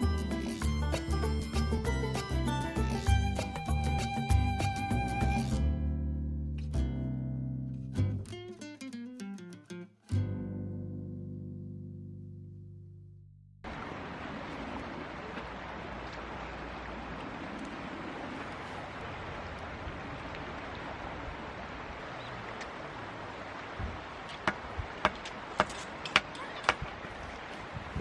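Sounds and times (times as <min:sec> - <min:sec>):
sharp knocks: 0:23.8 - 0:26.9.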